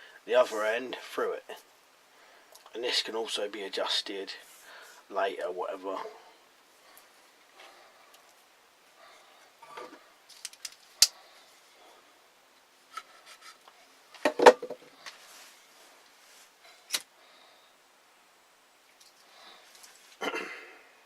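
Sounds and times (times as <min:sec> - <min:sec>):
wooden trap parts handled: 0:09.6 - 0:11.1
knocks: 0:14.2 - 0:14.9.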